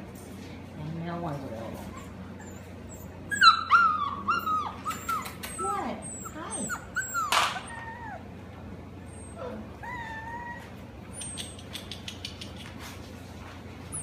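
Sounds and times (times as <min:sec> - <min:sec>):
puppy whining: 0:01.7 - 0:14.0.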